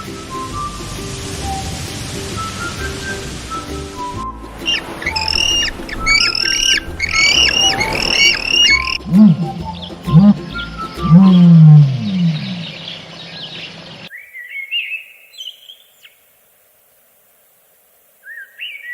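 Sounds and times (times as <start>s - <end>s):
songbird chirping: 0.0s - 16.3s, 18.2s - 18.9s
large animal deep calls: 4.7s - 10.5s.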